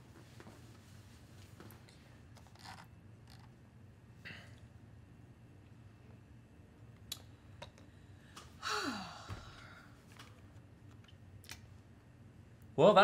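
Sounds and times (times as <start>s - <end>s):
low steady hum: 0.0s - 13.0s
person sighing: 8.6s - 9.9s.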